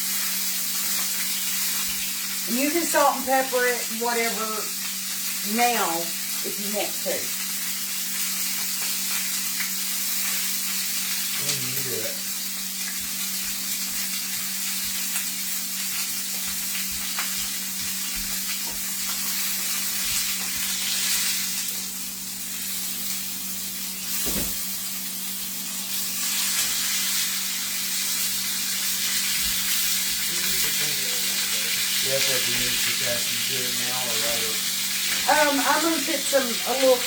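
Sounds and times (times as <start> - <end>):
meat sizzling in oil: 0.0 - 37.0
thump: 24.2 - 24.6.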